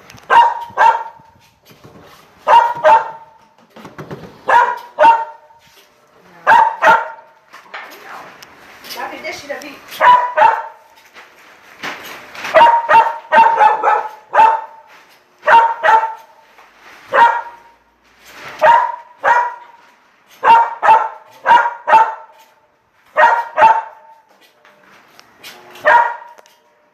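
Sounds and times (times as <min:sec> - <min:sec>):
dog barking: 0:00.3 - 0:01.2, 0:02.4 - 0:03.4, 0:04.5 - 0:05.6, 0:06.4 - 0:07.3, 0:09.9 - 0:10.9, 0:12.5 - 0:16.3, 0:17.1 - 0:17.8, 0:18.6 - 0:19.8, 0:20.4 - 0:22.5, 0:23.1 - 0:24.2, 0:25.8 - 0:26.4.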